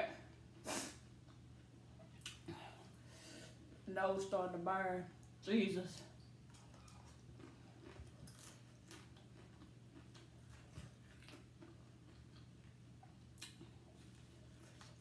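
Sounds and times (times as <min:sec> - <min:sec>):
steady low hum: 0:00.0 - 0:15.0
chips crunching while chewed: 0:06.5 - 0:12.7.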